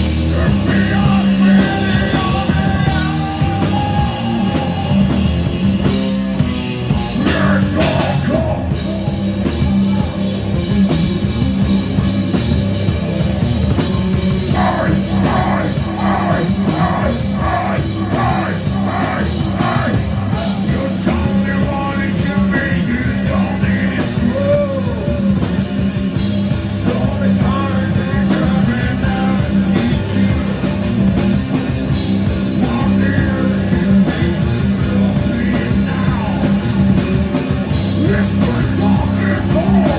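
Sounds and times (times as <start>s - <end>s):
singer's vocals: 0.0s - 5.2s, 6.9s - 10.2s, 14.3s - 25.8s, 26.8s - 30.8s, 32.4s - 39.9s
live rock band playing: 0.0s - 39.9s.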